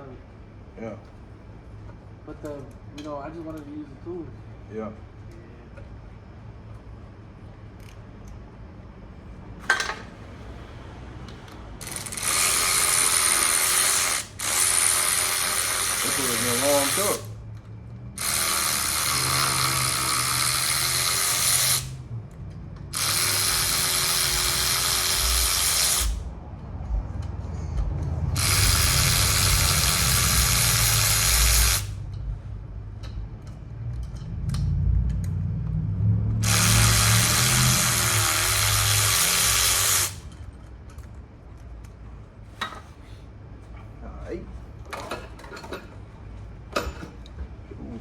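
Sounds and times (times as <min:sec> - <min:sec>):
cordless power tool running: 0:11.8 - 0:17.3, 0:18.2 - 0:22.0, 0:23.0 - 0:26.2, 0:28.4 - 0:31.9, 0:36.4 - 0:40.2.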